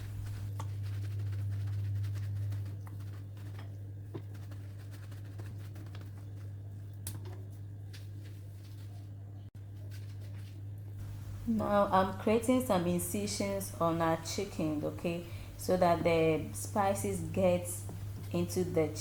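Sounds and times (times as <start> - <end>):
paper towels patting and rustling: 0.0 - 11.4
steady low hum: 0.0 - 19.0.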